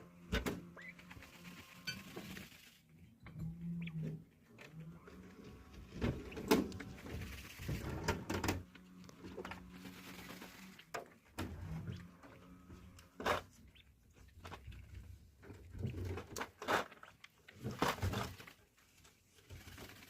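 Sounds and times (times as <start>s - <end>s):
dust scratching and rustling: 0.8s - 2.9s, 5.2s - 11.0s, 17.5s - 20.0s.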